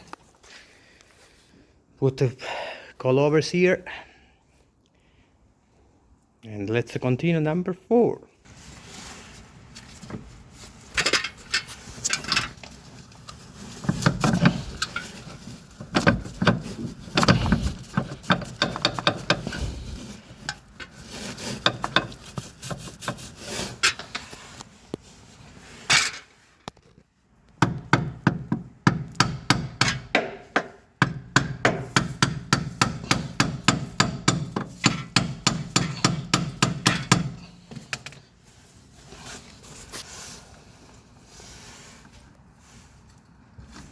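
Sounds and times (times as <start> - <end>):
metal knocks and clicks: 15.8 - 19.7, 27.6 - 38.1.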